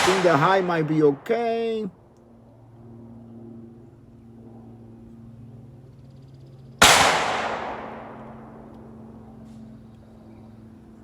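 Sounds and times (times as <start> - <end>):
rifle shot echoing: 0.0 - 1.7, 6.8 - 8.7.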